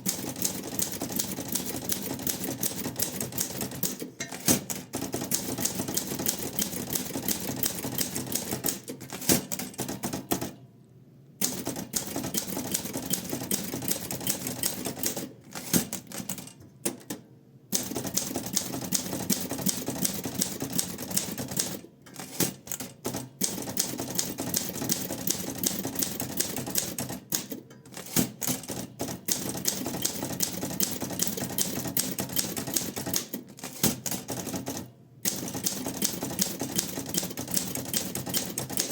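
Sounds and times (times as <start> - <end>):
manual typewriter typing: 0.0 - 10.6, 11.4 - 38.9.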